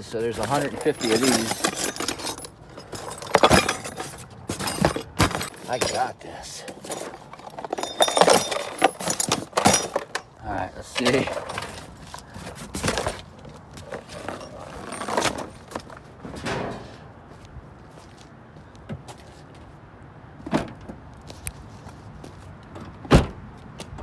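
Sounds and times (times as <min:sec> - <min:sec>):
cardboard boxes shuffling: 0:00.2 - 0:06.0
metal clinking: 0:00.2 - 0:06.1, 0:06.7 - 0:10.4, 0:11.0 - 0:17.1
car door shutting: 0:22.8 - 0:23.4.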